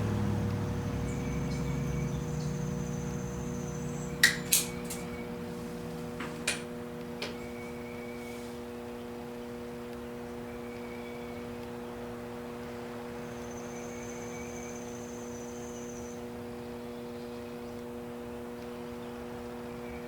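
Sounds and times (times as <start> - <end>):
lower hum: 0.0 - 8.2
steady electrical hum: 0.0 - 20.0
small parts clicking: 4.2 - 5.1.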